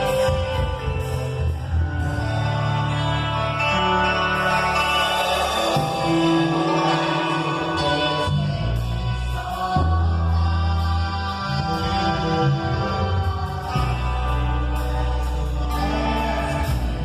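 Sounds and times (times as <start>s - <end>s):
band playing a song: 0.0s - 17.0s
bass notes: 0.0s - 17.0s
person singing: 0.0s - 17.0s.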